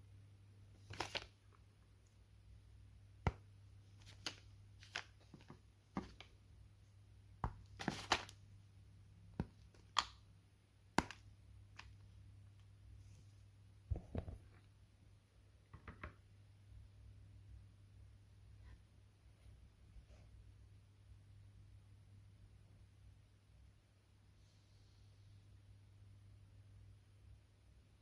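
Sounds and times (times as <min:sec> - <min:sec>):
wrapper rustling: 0:00.8 - 0:01.4, 0:07.8 - 0:08.4.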